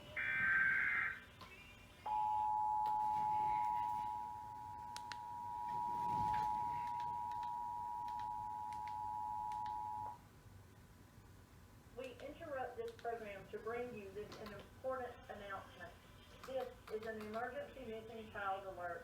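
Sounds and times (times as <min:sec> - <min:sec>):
two steady alert tones: 0:02.1 - 0:10.2.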